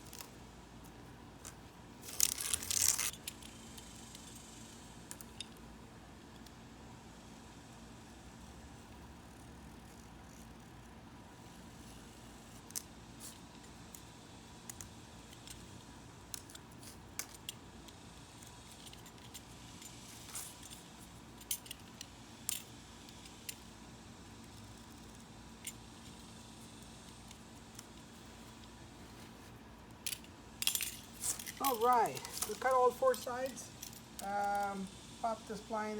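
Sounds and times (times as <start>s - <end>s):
faint steady hum: 0.0s - 35.9s
knife clicking and scraping mesh: 1.4s - 3.6s, 30.1s - 34.7s.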